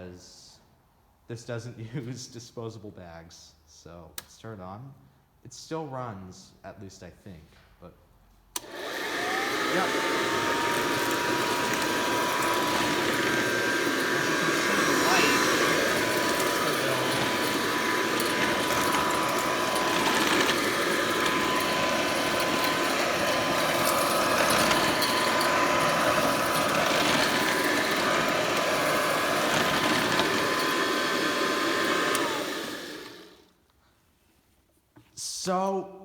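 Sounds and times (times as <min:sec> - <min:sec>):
upright vacuum cleaner running: 0:08.6 - 0:33.5
vacuum cleaner winding down: 0:08.6 - 0:33.5.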